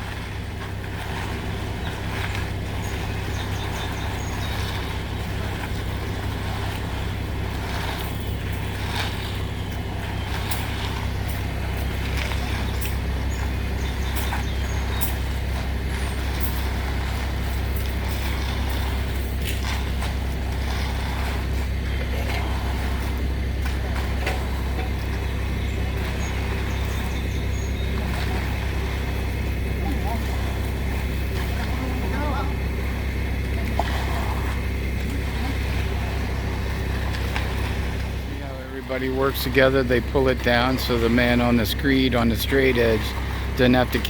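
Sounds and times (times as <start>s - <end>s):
diesel truck engine running: 0.0s - 44.0s.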